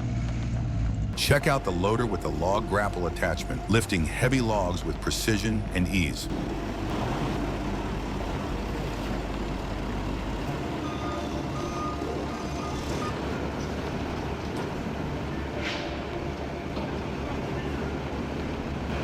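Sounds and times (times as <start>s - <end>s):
diesel engine running: 0.0s - 19.0s
reversing alarm beeps: 10.5s - 13.8s.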